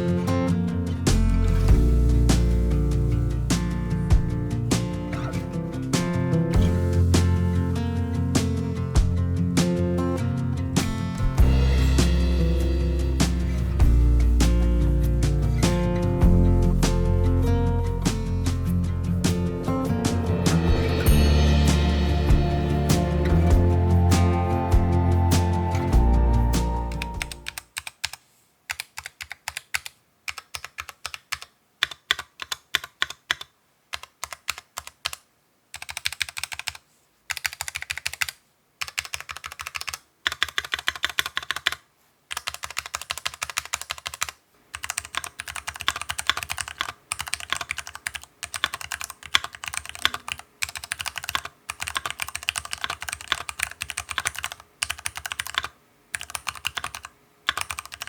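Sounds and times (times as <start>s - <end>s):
mechanical keyboard typing: 27.2s - 58.0s.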